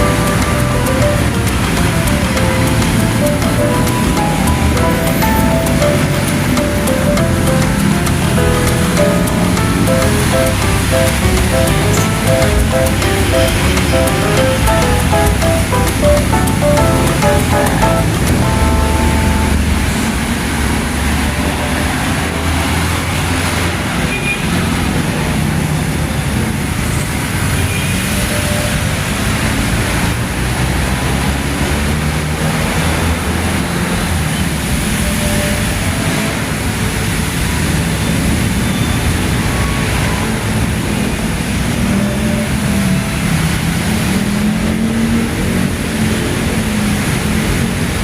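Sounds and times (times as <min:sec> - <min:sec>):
tyres hissing on wet road: 0:00.0 - 0:12.3, 0:17.9 - 0:48.0
vehicle engine drone: 0:00.0 - 0:23.7.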